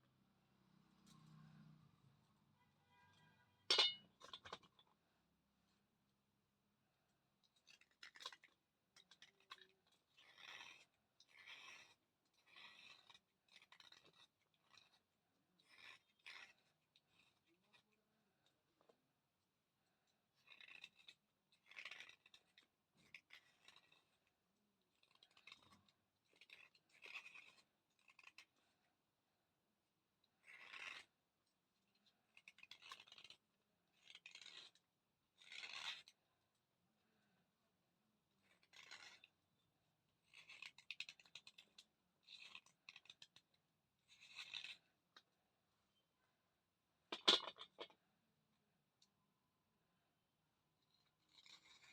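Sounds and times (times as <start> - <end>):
slate pencil crunching: 9.0 - 18.0, 20.3 - 24.3, 30.4 - 31.1, 32.3 - 34.8, 35.4 - 36.2, 38.4 - 39.3, 40.2 - 44.9.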